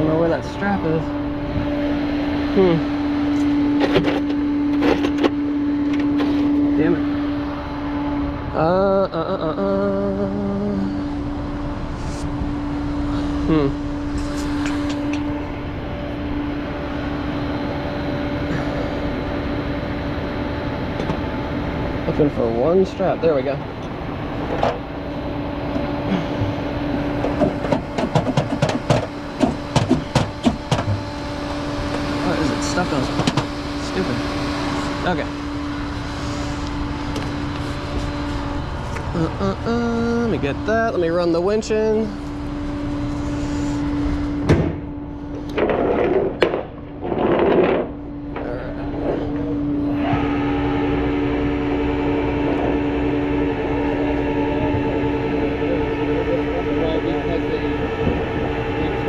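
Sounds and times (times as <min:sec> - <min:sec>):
fuller machine note: 0:00.0 - 0:59.0
truck engine idling: 0:00.0 - 0:59.0
hydraulic winch humming: 0:12.0 - 0:59.0.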